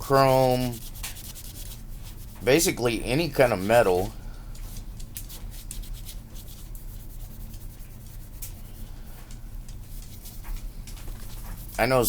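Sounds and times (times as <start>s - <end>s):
scratchy rubbing on metal: 0.0s - 4.0s, 5.5s - 8.7s
steady low hum: 0.0s - 12.0s.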